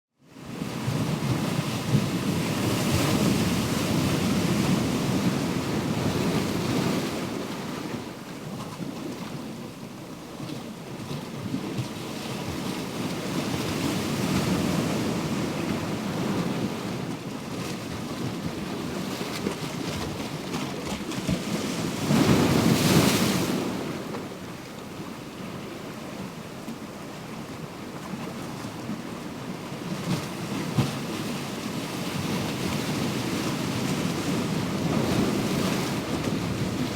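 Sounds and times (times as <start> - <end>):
ocean waves washing in and out: 12.4 - 27.9, 28.8 - 36.9.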